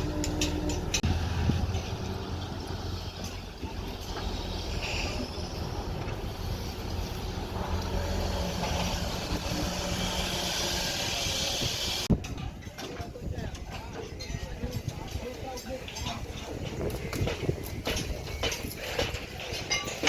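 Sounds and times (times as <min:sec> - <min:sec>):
excavator diesel engine running: 0:00.0 - 0:12.1.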